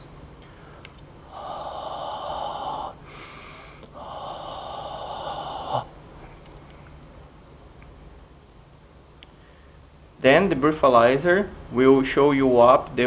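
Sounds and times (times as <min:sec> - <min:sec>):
person blowing into breathalyzer: 0:01.3 - 0:06.0.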